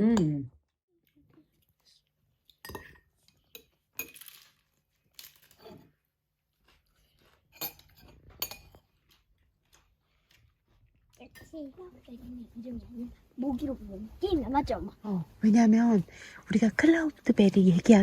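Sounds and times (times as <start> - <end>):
dishes and cutlery clinking: 2.6 - 4.7, 7.5 - 9.2, 11.2 - 11.8.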